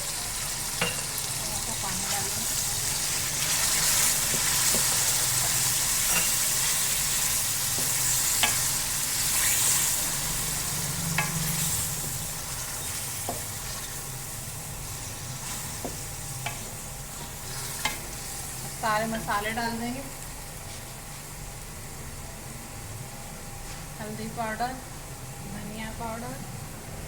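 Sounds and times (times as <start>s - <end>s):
chicken sizzling in oil: 0.0s - 20.7s.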